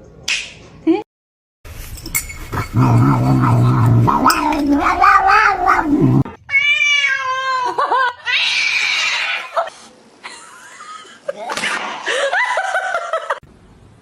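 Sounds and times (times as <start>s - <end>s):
cat hissing: 2.5s - 7.3s, 8.3s - 9.8s
cats yowling: 2.6s - 9.7s.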